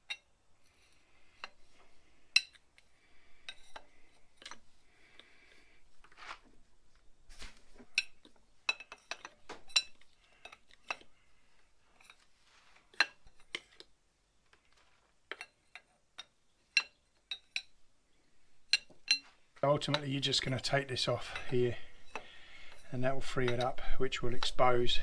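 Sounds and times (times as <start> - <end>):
metal spanners clinking: 18.7 - 24.6.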